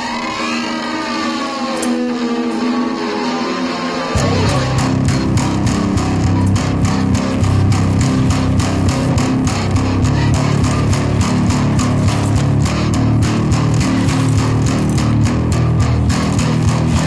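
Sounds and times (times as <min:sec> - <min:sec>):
distorted electric guitar: 0:00.0 - 0:17.0
bass guitar: 0:04.1 - 0:17.0.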